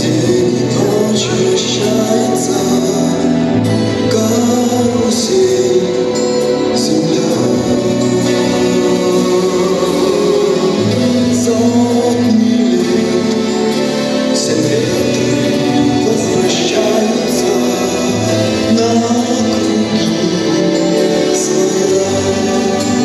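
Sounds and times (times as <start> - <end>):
instrumental backing music: 0.0 - 23.0
voices singing together: 0.0 - 23.0.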